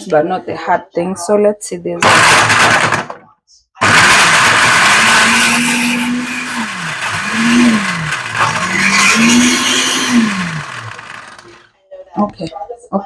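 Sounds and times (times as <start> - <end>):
blender grinding hard vegetables: 2.0 - 3.1, 3.8 - 11.7.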